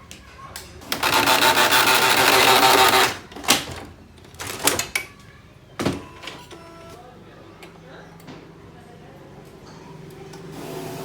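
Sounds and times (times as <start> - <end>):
printer motor whirring clatter: 0.9 - 3.8
printer clicks and clunks: 0.9 - 5.0.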